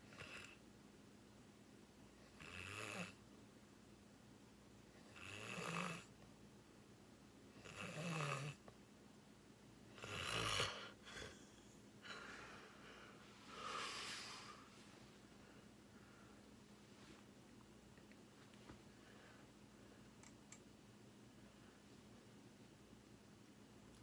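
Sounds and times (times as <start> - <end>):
person snoring: 10.0 - 11.4
soft breath out: 10.7 - 16.5.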